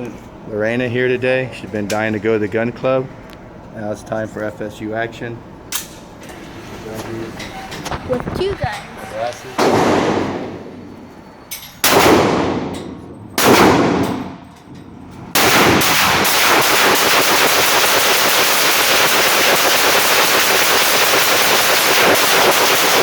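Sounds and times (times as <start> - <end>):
rapid pistol fire: 9.6 - 10.6, 11.8 - 12.8, 13.4 - 14.4, 15.3 - 23.0
pistol shots: 9.6 - 10.7, 11.8 - 14.4, 15.3 - 23.0.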